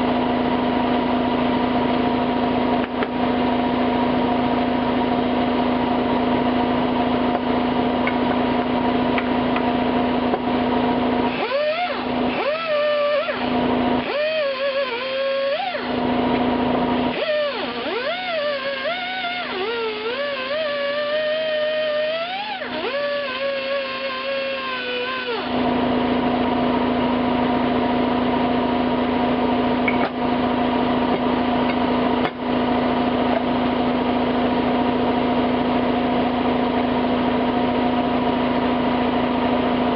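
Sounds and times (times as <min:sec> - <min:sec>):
wire wheel tool motor: 0:11.2 - 0:26.1.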